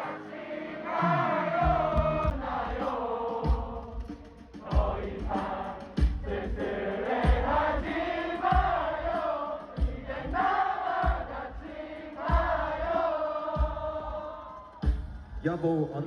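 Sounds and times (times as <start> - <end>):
crowd singing along: 0.0 - 15.3
live pop music: 0.0 - 15.4
heavy kick drum: 4.7 - 5.4, 6.0 - 6.6, 7.2 - 7.9, 8.5 - 9.1, 9.8 - 10.4, 11.0 - 11.4, 12.3 - 12.9, 13.6 - 14.2, 14.8 - 15.3.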